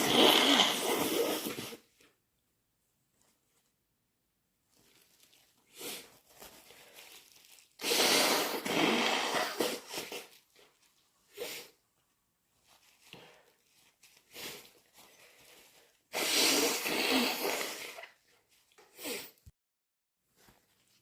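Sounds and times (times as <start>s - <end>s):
person blowing nose: 0.0s - 1.9s, 5.7s - 6.2s, 7.7s - 10.4s, 11.3s - 11.8s, 14.3s - 14.8s, 16.1s - 18.2s, 18.9s - 19.5s
person sniffing: 0.0s - 1.9s, 7.8s - 10.3s, 11.3s - 11.8s, 16.1s - 18.1s, 18.9s - 19.5s
breath: 13.1s - 13.6s.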